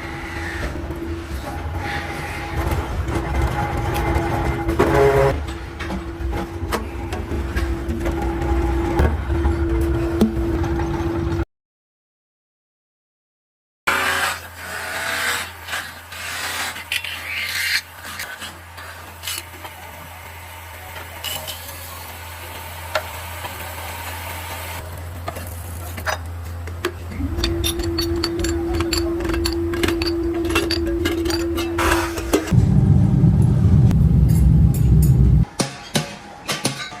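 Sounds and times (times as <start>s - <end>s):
low machine hum: 24.8s - 35.5s
high-pitched hum: 27.0s - 35.5s
scraping on metal kettle: 27.2s - 32.5s.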